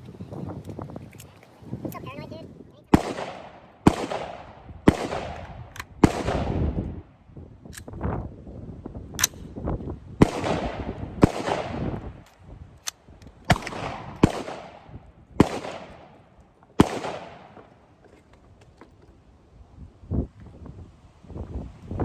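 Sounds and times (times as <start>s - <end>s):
faint gunshot cracks: 2.9s - 6.6s, 16.8s - 17.7s
rifle shots echoing: 2.9s - 6.8s, 10.2s - 12.1s, 13.5s - 17.9s.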